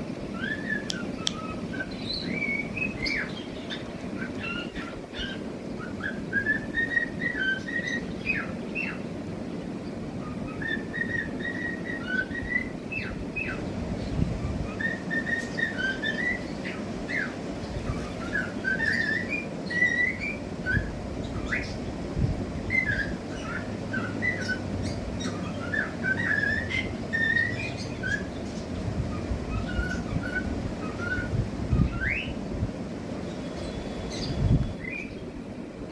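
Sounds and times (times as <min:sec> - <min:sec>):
low background hum: 0:00.0 - 0:35.9
cockatiels whistling: 0:00.4 - 0:09.0, 0:10.2 - 0:13.6, 0:14.6 - 0:21.8, 0:22.7 - 0:28.4, 0:29.1 - 0:32.4.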